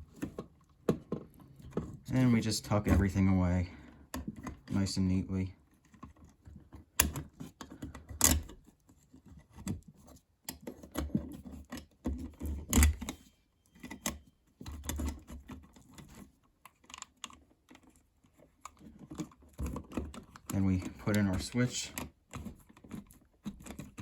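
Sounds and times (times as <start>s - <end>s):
wires scraping and clicking: 13.8s - 24.0s.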